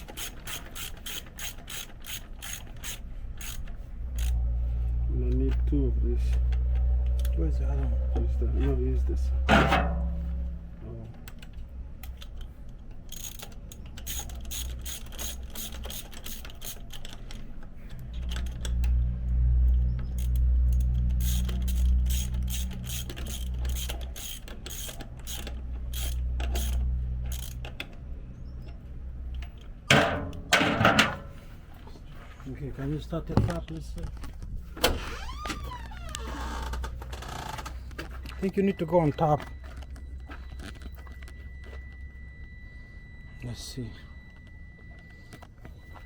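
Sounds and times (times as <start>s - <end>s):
ratchet wrench clicking: 0.0s - 4.4s, 13.0s - 17.4s, 20.1s - 27.8s
low steady hum: 2.4s - 46.0s.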